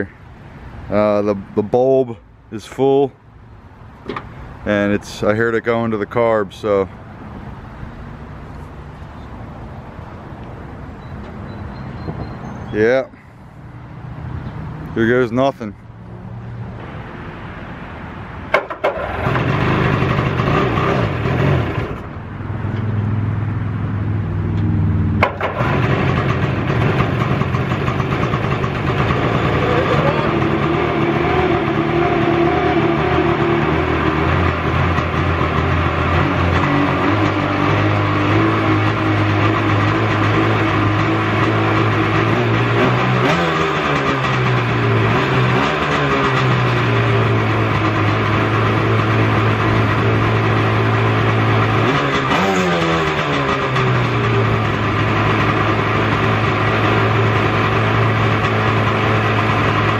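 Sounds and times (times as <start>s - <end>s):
boat engine running: 25.3s - 33.7s.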